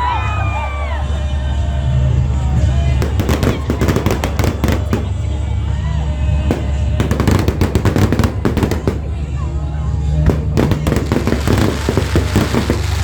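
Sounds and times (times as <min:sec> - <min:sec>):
loud background music: 0:00.0 - 0:13.0
fireworks crackling and popping: 0:03.0 - 0:05.5, 0:06.4 - 0:09.4, 0:10.2 - 0:13.0.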